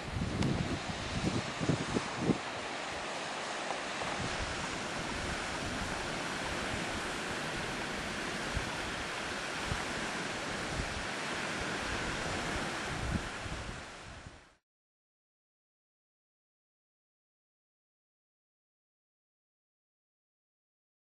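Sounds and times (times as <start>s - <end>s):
wind buffeting microphone: 0.0s - 14.5s
sea waves rushing: 0.0s - 14.6s
wind: 0.0s - 14.6s.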